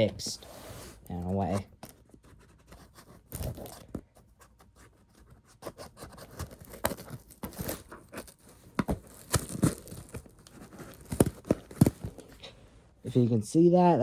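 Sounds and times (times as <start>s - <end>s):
scissors cutting cardboard: 1.4s - 12.2s.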